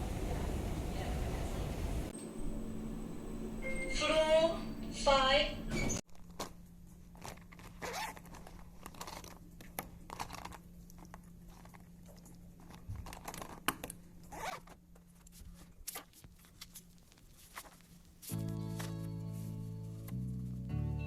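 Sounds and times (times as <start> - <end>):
faint steady hum: 0.0 - 6.0.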